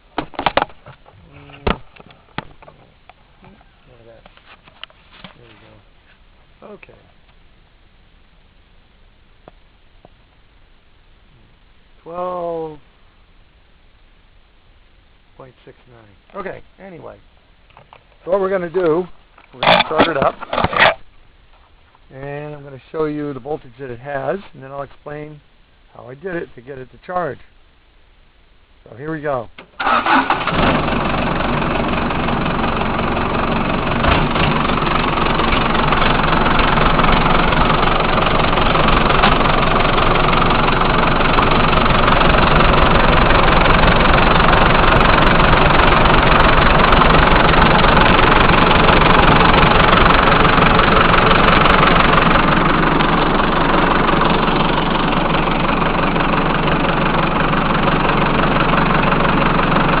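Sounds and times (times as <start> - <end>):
diesel engine running: 29.8 - 60.0.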